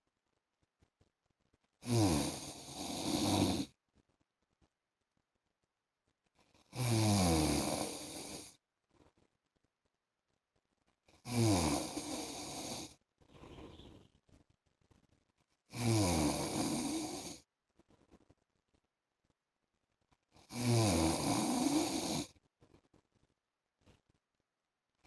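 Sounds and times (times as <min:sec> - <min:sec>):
man snoring: 0:01.8 - 0:03.7, 0:06.7 - 0:08.6, 0:11.2 - 0:13.0, 0:15.7 - 0:17.4, 0:20.4 - 0:22.3.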